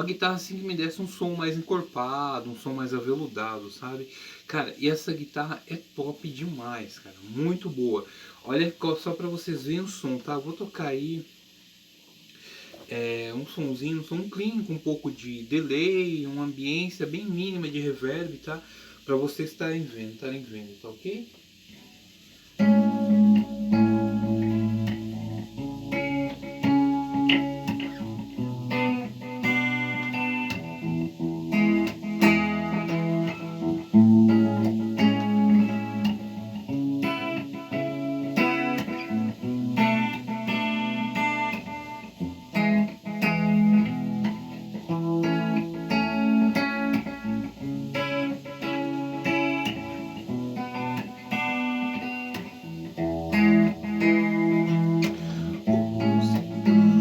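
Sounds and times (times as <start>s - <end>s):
clean electric guitar playing: 22.6s - 57.0s.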